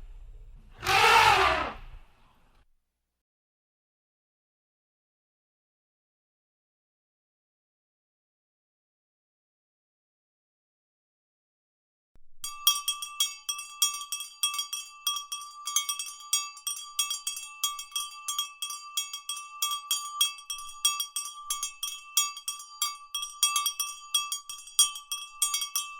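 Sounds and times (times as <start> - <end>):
bells ringing: 12.4 - 25.9.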